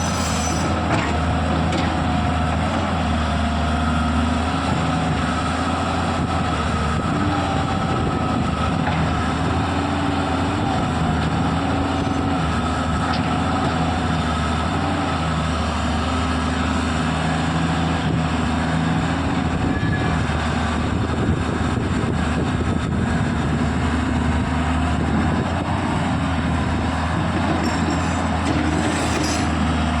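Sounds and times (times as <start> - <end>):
excavator diesel engine running: 0.0 - 30.0.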